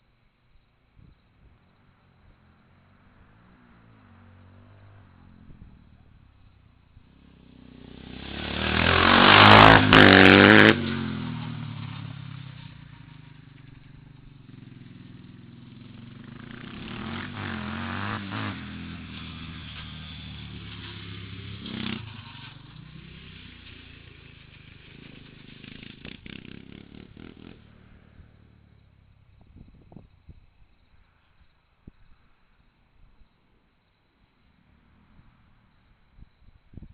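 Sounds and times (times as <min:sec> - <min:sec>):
quad bike engine revving: 0:07.0 - 0:29.2.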